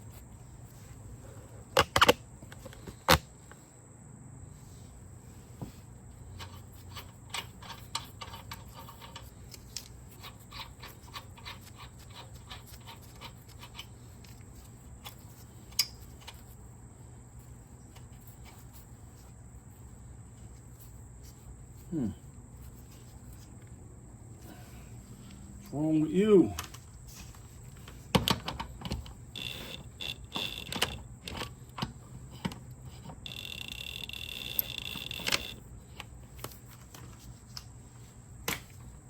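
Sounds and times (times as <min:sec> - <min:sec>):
steady low hum: 0:00.0 - 0:39.0
tools clicking and tapping: 0:15.0 - 0:16.4, 0:28.1 - 0:36.6.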